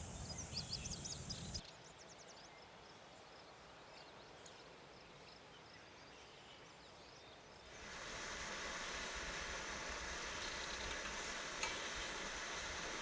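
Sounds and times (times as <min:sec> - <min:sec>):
faint bird chirps: 0:00.0 - 0:02.8
food sizzling over a fire: 0:07.7 - 0:13.0.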